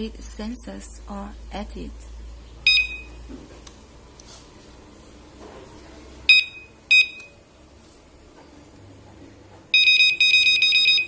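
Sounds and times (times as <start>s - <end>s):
electronic buzzer beeping: 9.7s - 11.0s.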